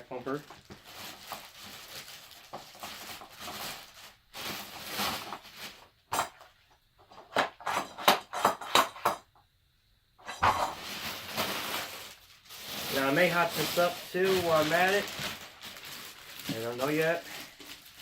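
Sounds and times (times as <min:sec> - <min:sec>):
plastic parts rustling: 0:00.2 - 0:09.2, 0:10.2 - 0:18.0
plastic pieces clacking and knocking: 0:06.1 - 0:09.3, 0:13.4 - 0:18.0.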